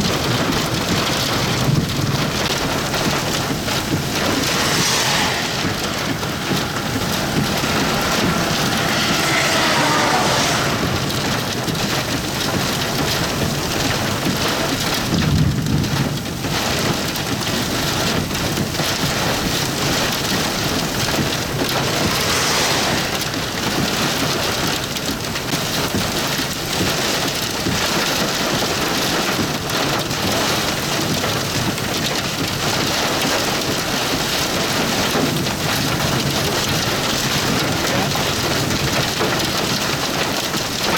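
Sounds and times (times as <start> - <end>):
low thunder rumble: 0.0 - 25.2
heavy rain pelting down: 0.0 - 40.9.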